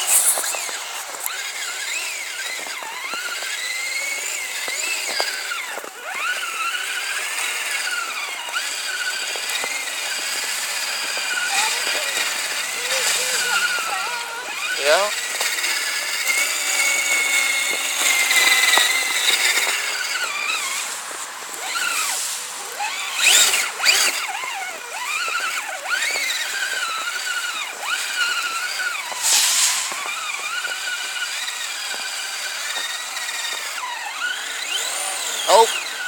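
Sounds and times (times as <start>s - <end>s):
hissing bursts: 0.0s - 2.8s, 9.0s - 24.2s, 28.2s - 33.7s
electric motor whining: 0.0s - 36.0s.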